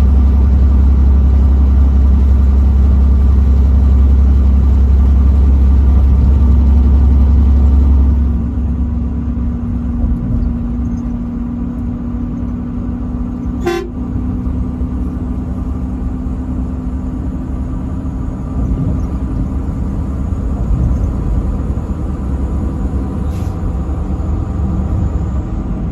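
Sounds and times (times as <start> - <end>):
heavy low rumble: 0.0 - 25.9
truck engine and tyres droning: 0.0 - 25.9
horn toot: 13.6 - 14.1.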